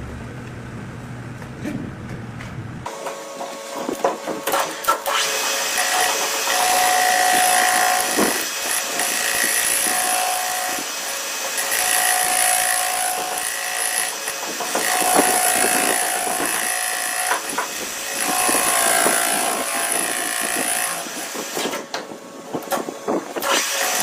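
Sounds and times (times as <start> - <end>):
high machine whine: 0.0 - 14.1
cnc machine rasping cut: 4.6 - 21.7.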